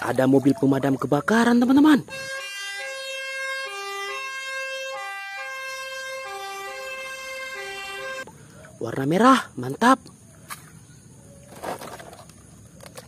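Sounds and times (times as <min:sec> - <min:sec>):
two-tone fire engine siren: 0:01.8 - 0:08.3.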